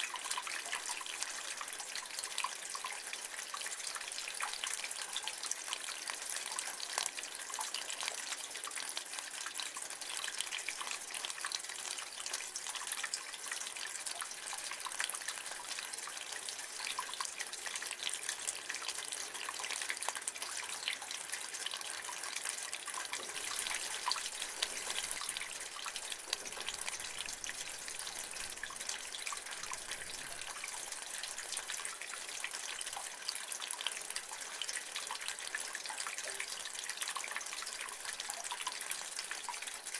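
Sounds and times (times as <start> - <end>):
rainwater splashing from gutter: 0.0 - 39.9.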